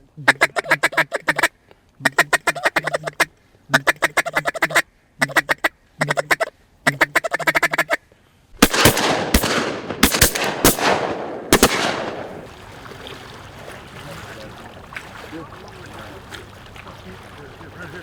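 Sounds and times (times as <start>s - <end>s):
duck call quacks: 0.2s - 8.0s
shotgun shots echoing: 8.6s - 12.9s.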